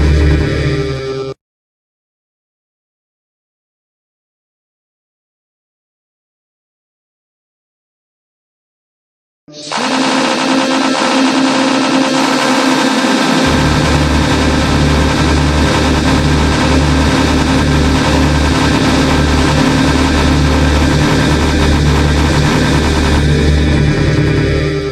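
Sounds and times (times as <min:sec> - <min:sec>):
heavy pulsing bass: 0:00.0 - 0:01.2, 0:09.7 - 0:24.9
dense wall of noise: 0:09.6 - 0:24.9.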